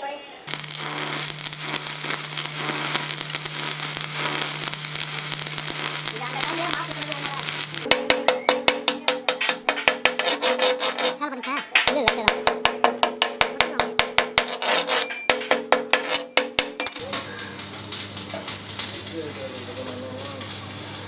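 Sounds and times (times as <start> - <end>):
steady machine hum: 0.5 - 7.9
rapid metal tapping on steel: 0.6 - 11.2, 11.9 - 17.1.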